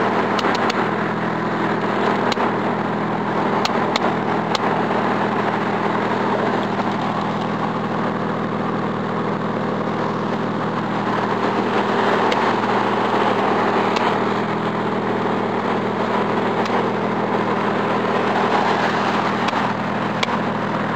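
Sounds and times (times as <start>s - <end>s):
car engine idling: 0.0s - 20.9s
faint engine ticks: 0.2s - 0.9s, 3.5s - 4.7s, 19.2s - 20.9s.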